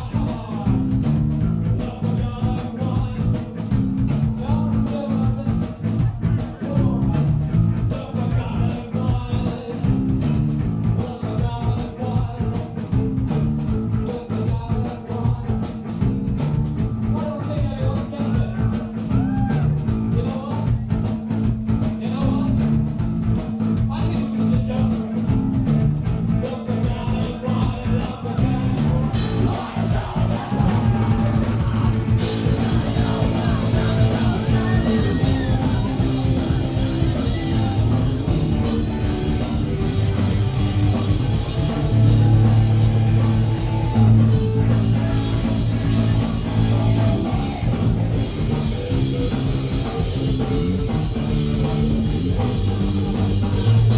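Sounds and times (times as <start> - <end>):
live rock band playing: 0.0 - 53.9
fast drum strokes: 25.3 - 53.9.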